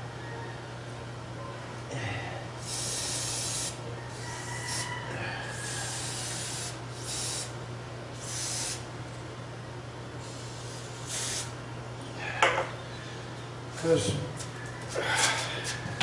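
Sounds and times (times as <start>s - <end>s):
spray can hissing: 2.6s - 3.8s, 5.9s - 7.5s, 8.2s - 8.8s, 10.2s - 11.5s.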